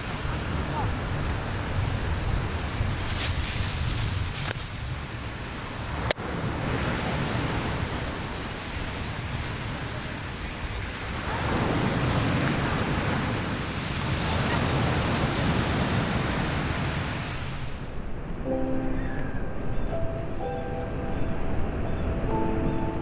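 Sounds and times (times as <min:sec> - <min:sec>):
ocean surf washing on beach: 0:00.0 - 0:18.2.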